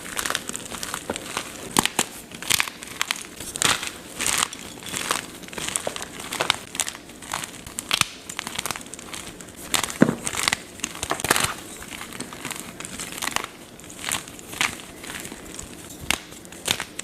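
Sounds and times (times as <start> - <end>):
chalk being crushed: 0.0 - 17.0.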